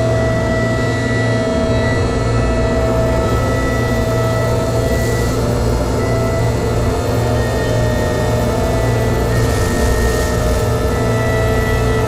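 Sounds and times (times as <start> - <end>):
held electronic drone tones: 0.0 - 12.0
hiss: 8.7 - 12.0.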